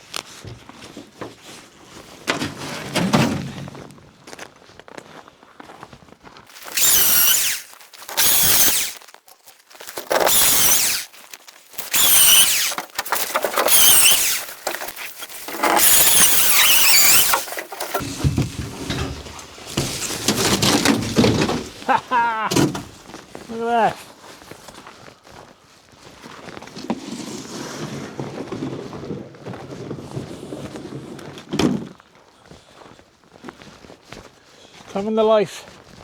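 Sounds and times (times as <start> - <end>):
wooden thunks: 2.2 - 4.0, 11.8 - 21.9, 22.5 - 23.1
wood squealing as pried apart: 2.3 - 4.0, 6.5 - 23.1.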